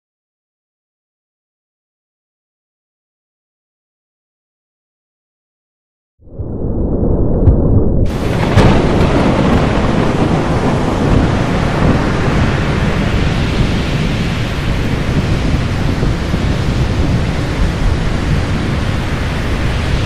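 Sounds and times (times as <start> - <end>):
thunder rumbling: 6.2 - 20.0
heavy rain: 8.1 - 20.0.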